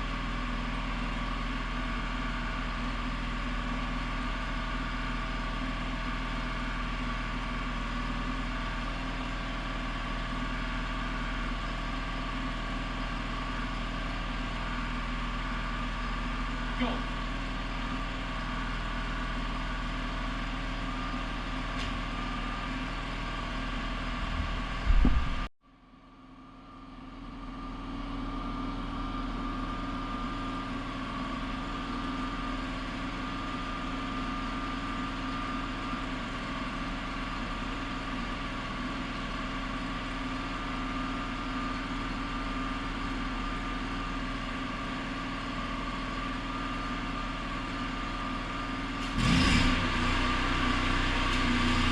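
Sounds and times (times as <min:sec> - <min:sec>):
motor hum: 0:23.7 - 0:25.5.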